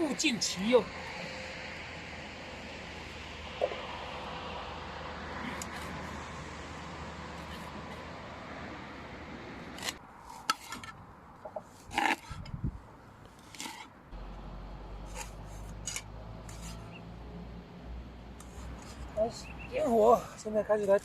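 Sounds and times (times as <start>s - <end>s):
knife scraping metal: 15.1s - 17.0s.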